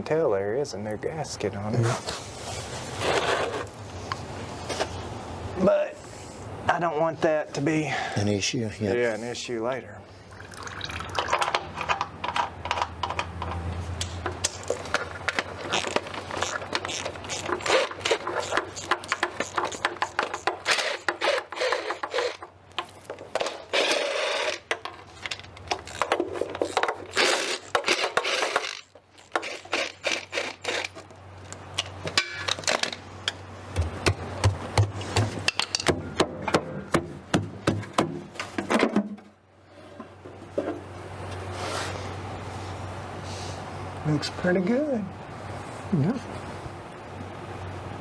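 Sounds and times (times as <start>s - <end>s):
metal tools clinking and scraping: 11.2s - 33.4s.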